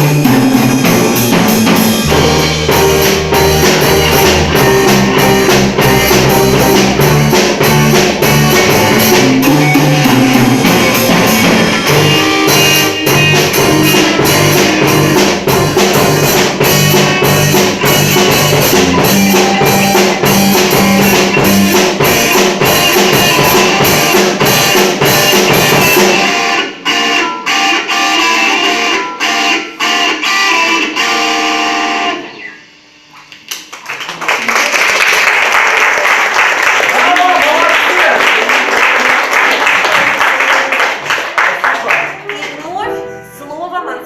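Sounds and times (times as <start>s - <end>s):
music with drum beat and bass: 0.0s - 26.8s.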